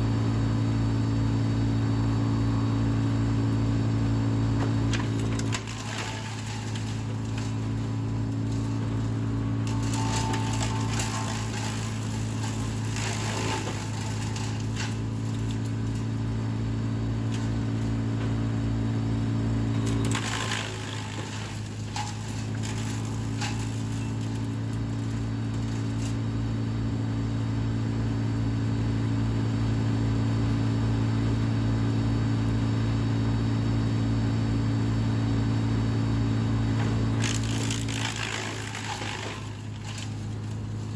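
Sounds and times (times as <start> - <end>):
wood chipper engine hum: 0.0 - 40.9
branches crackling through chipper: 4.2 - 26.4, 36.6 - 40.9.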